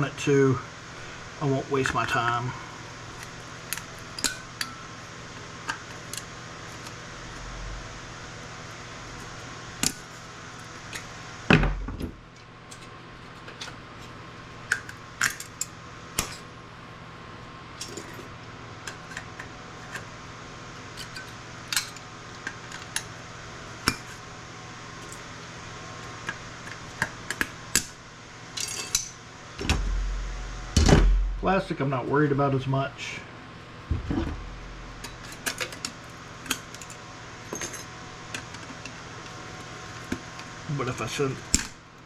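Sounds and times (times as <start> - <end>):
steady low hum: 0.0 - 42.0
metal parts clicking and clinking: 28.6 - 30.0, 34.0 - 37.9.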